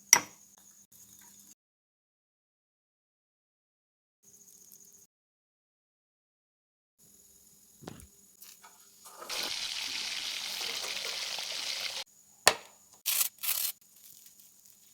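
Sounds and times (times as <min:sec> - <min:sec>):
water pouring: 0:09.0 - 0:12.0.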